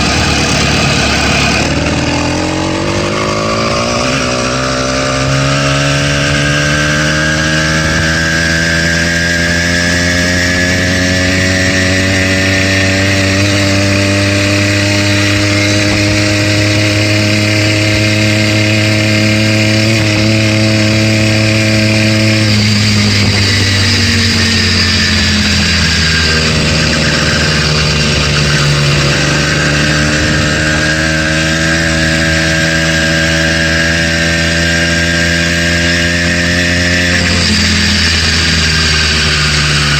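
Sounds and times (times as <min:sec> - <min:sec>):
two-stroke engine running: 0:00.0 - 0:39.9.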